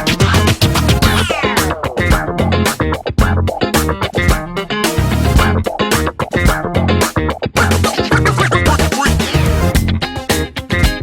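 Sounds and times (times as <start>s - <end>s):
music with guitar and bass: 0.0s - 11.0s.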